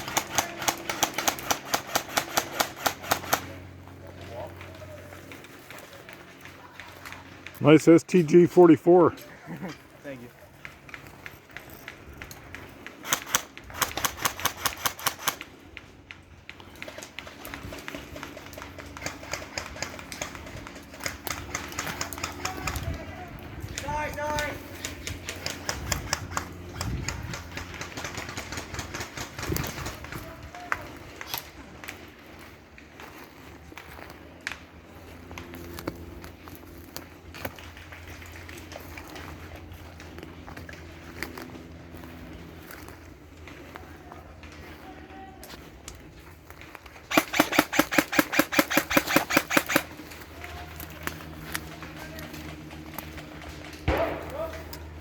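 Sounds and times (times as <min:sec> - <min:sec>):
footsteps: 0:29.2 - 0:55.0
airsoft gun shots: 0:47.1 - 0:49.9, 0:53.9 - 0:54.7.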